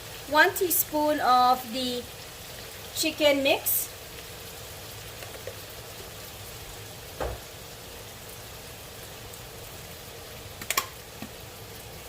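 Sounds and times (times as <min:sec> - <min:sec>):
vegetables sizzling in a frying pan: 0:00.0 - 0:12.0
dull knock: 0:07.2 - 0:07.5.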